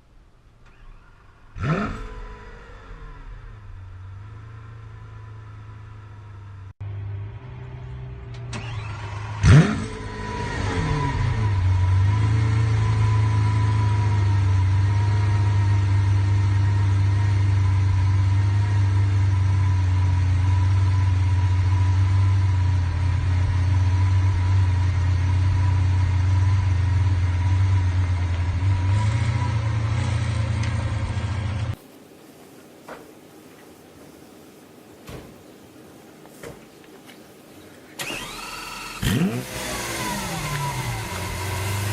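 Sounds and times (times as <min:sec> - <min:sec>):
car engine idling: 0:00.0 - 0:31.8
car engine cranking: 0:00.5 - 0:06.7, 0:08.2 - 0:16.3, 0:37.9 - 0:41.9
engine revving: 0:00.6 - 0:31.8, 0:38.0 - 0:41.9.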